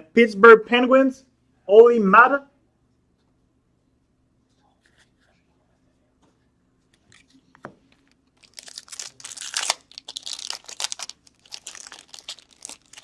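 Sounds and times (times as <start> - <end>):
wrapper tearing and crinkling: 8.4 - 13.0.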